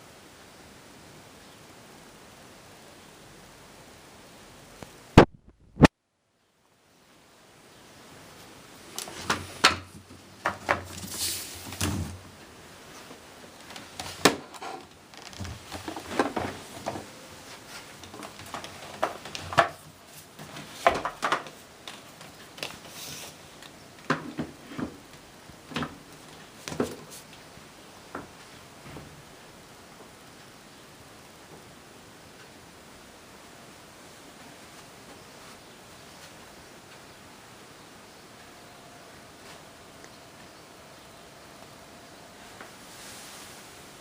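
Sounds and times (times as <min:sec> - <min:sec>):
rustling: 0:08.3 - 0:27.5, 0:42.4 - 0:44.0
plastic parts clicking and knocking: 0:20.4 - 0:22.8.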